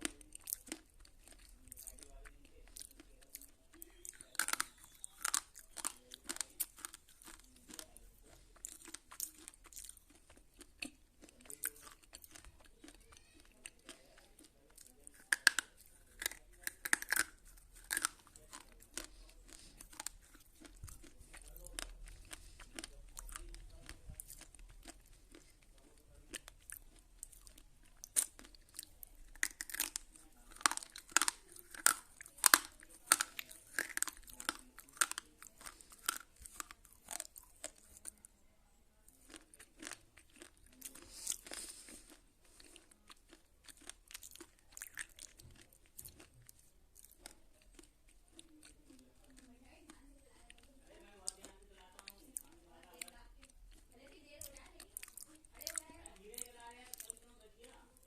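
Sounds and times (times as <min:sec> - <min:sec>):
quiet chewing: 0:00.0 - 0:58.0
crunching bites: 0:02.7 - 0:07.9, 0:08.6 - 0:38.2.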